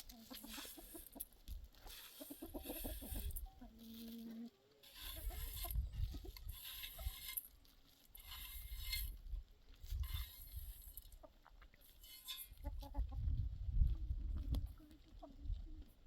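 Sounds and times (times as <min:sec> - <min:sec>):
chickens clucking: 0:00.0 - 0:09.1, 0:09.9 - 0:16.0
wind rumble on microphone: 0:05.2 - 0:07.1, 0:08.8 - 0:10.8, 0:12.6 - 0:16.0
short hissing or scraping noises: 0:06.4 - 0:07.5, 0:08.2 - 0:09.2, 0:09.9 - 0:11.0.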